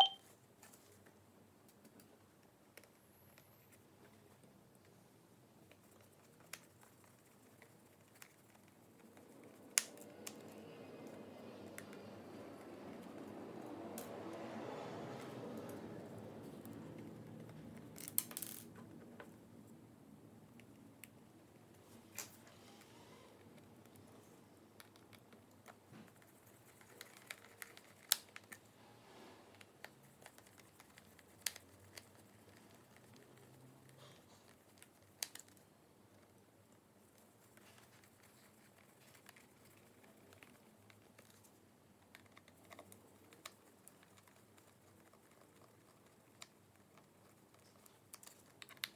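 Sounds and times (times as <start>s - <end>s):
small parts clicking and tapping: 17.4s - 19.3s.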